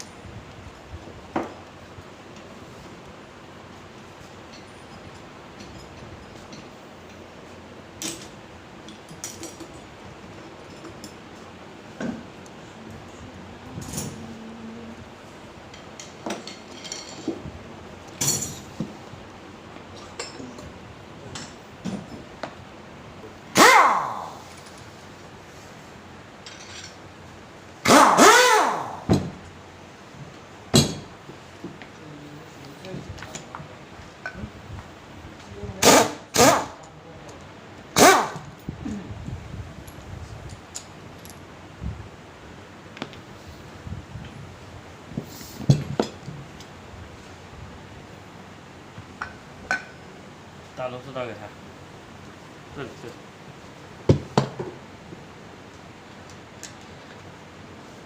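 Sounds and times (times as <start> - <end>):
metal tools clinking: 15.7 - 17.4, 18.1 - 18.8, 19.9 - 20.7, 26.4 - 27.1.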